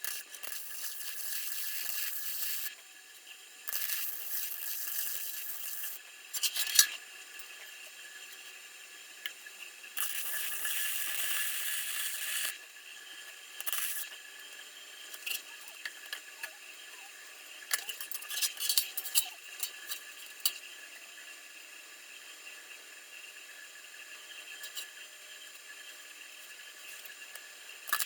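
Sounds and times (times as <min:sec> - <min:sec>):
welder sizzling crackle: 0:00.0 - 0:02.8, 0:03.6 - 0:08.6, 0:09.9 - 0:12.6, 0:13.2 - 0:14.5.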